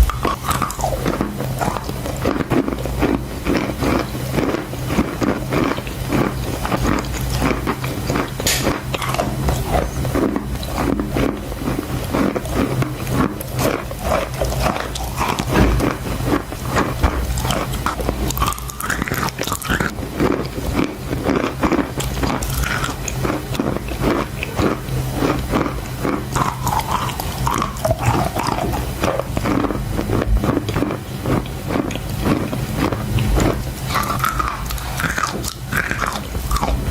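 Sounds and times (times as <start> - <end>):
person chewing crunchy chalk: 0.0 - 36.9.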